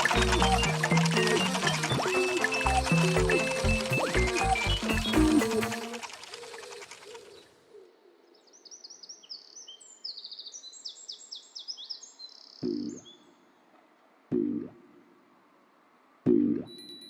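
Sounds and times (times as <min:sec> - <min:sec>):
orchestral music: 0:00.0 - 0:06.0
birds chirping and trilling: 0:00.0 - 0:13.4.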